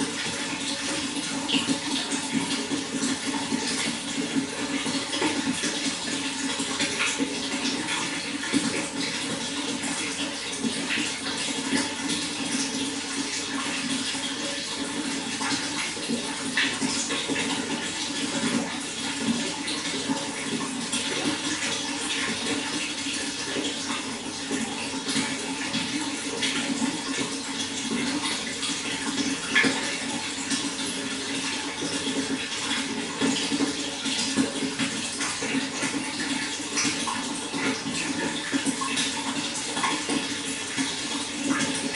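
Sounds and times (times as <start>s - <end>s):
water flowing: 0.0s - 41.9s.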